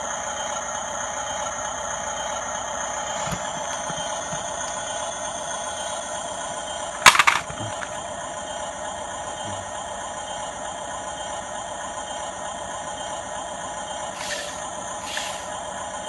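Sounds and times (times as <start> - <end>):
electric motors whining: 2.1 - 16.0
loud rattle: 6.9 - 8.0.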